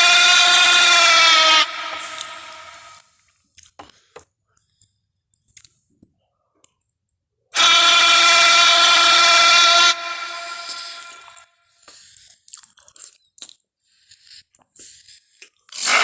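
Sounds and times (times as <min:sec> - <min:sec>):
loud creature roar: 0:00.0 - 0:03.0, 0:07.6 - 0:11.4.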